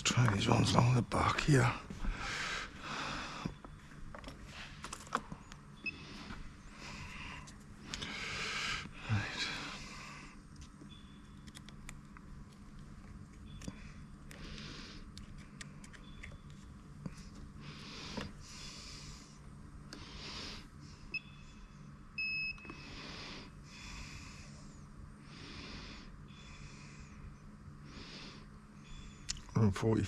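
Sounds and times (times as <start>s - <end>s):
low hum: 0.0s - 30.0s
soft hissing puffs: 6.0s - 10.4s, 17.1s - 21.1s.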